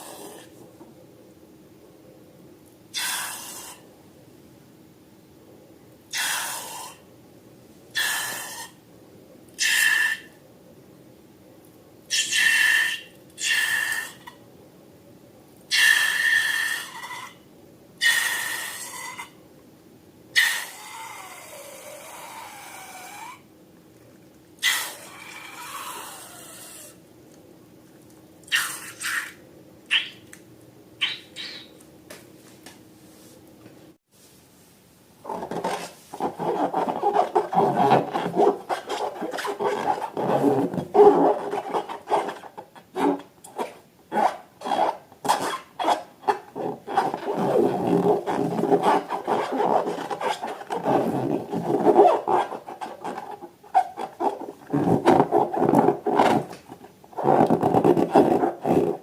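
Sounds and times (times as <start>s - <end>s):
rubbing and squeezing balloons: 35.2s - 59.0s.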